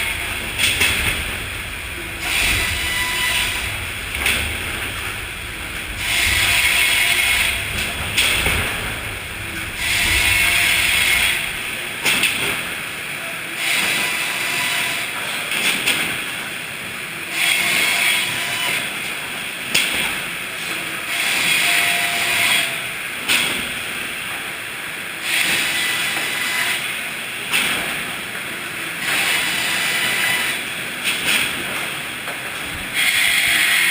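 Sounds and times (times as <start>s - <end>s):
sharp clicks and knocks: 0.0s - 12.7s
loud hissing surge: 0.0s - 13.2s
sawmill machinery din: 0.0s - 16.2s, 17.2s - 19.1s, 19.8s - 24.2s, 25.2s - 27.8s, 29.0s - 31.8s, 32.5s - 33.9s.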